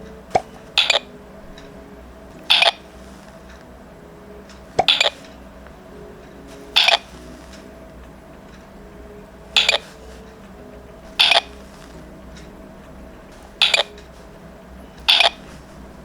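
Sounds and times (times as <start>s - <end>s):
toy electronic beeps: 0.3s - 1.7s, 2.3s - 3.3s, 4.7s - 5.4s, 6.4s - 7.6s, 9.5s - 10.2s, 11.1s - 12.0s, 13.4s - 14.2s, 14.9s - 16.0s.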